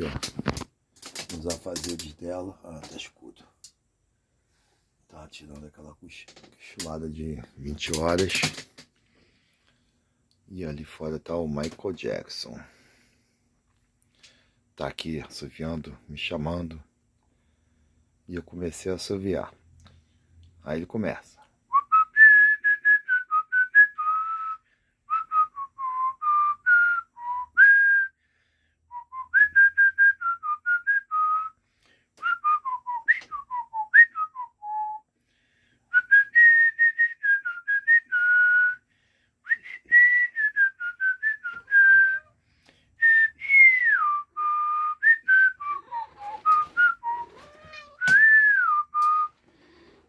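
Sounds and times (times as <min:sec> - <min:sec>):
man whistling: 0:21.7 - 0:28.2, 0:28.9 - 0:31.6, 0:32.2 - 0:35.1, 0:35.9 - 0:38.8, 0:39.4 - 0:42.3, 0:43.0 - 0:47.4, 0:48.0 - 0:49.4.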